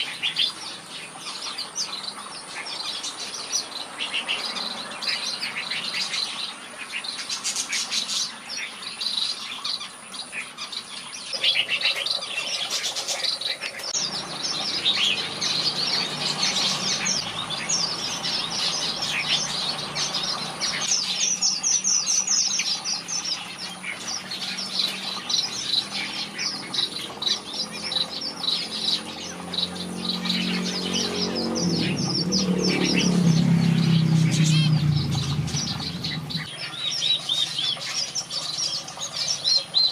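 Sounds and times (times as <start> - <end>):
birds singing and chirping: 0.0 - 39.9
low droning sound: 29.8 - 36.5.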